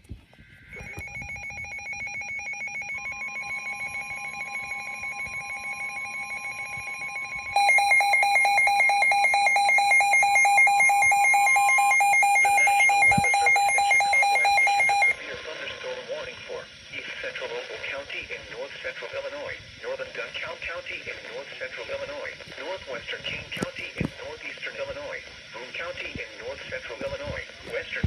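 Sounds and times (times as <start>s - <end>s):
rapid electronic alarm beeping: 0.4s - 15.2s
steady warning tone: 0.4s - 18.4s.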